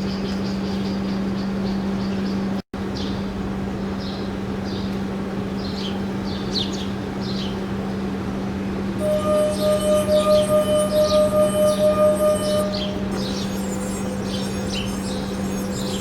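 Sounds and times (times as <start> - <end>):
high bird chirps: 9.0 - 16.0
low hum: 9.0 - 16.0
singing glass ringing: 9.0 - 16.0.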